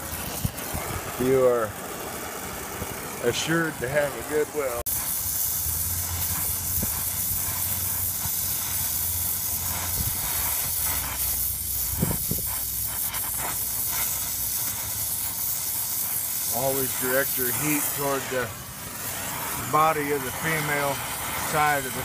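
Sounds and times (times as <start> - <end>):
torch flame hissing: 0.0 - 22.0.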